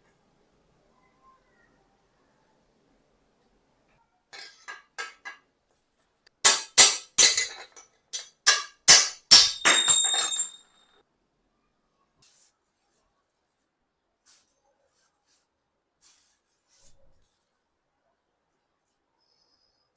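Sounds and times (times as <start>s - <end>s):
metal striking metal: 6.4s - 10.7s.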